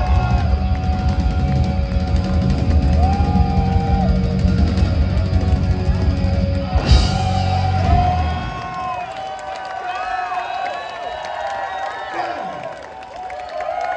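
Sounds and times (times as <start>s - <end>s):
hard rock band playing live: 0.0s - 8.8s.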